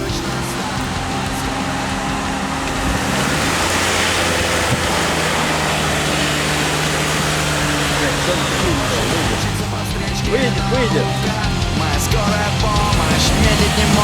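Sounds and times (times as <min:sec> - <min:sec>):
car churning through mud: 0:00.0 - 0:14.0
car engine running hard: 0:00.0 - 0:14.0.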